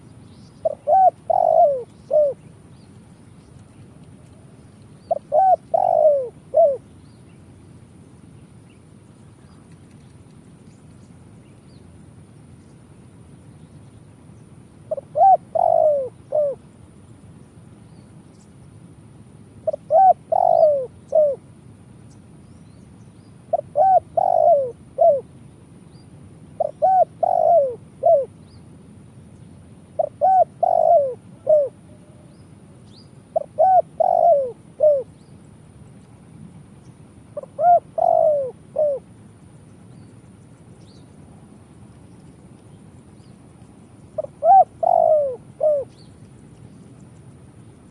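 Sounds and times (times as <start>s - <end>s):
steady low hiss: 0.0s - 47.9s
dove cooing: 0.6s - 2.5s, 4.4s - 6.9s, 14.9s - 16.7s, 19.6s - 21.5s, 23.5s - 25.3s, 26.6s - 28.4s, 30.0s - 32.4s, 33.3s - 35.2s, 37.4s - 39.1s, 44.1s - 46.1s.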